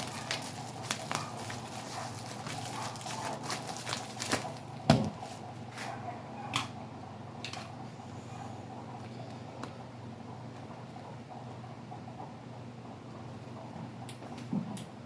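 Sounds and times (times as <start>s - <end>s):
packaging rustling: 0.0s - 5.4s.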